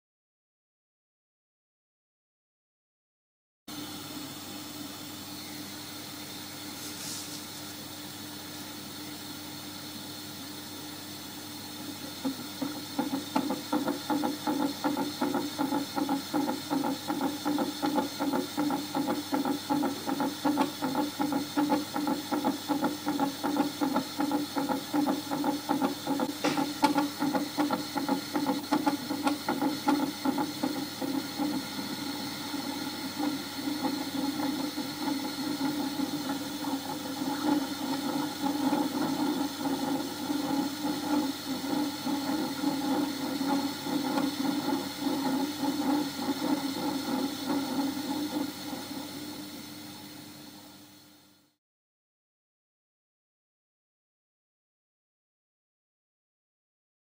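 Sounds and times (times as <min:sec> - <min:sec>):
steady hiss: 0:06.6 - 0:07.9.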